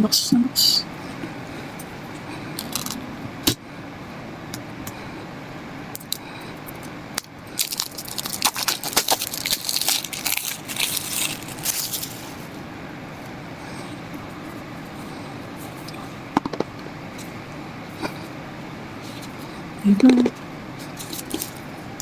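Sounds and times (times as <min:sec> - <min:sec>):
packaging clicks: 0:07.2 - 0:12.1
packaging crinkling: 0:07.6 - 0:12.5, 0:21.0 - 0:21.7.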